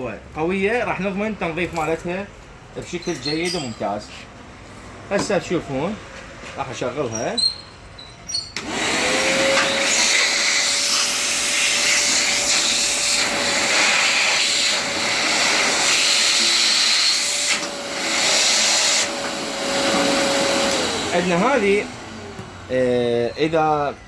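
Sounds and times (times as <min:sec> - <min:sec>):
vacuum cleaner motor whining: 0:08.6 - 0:24.0.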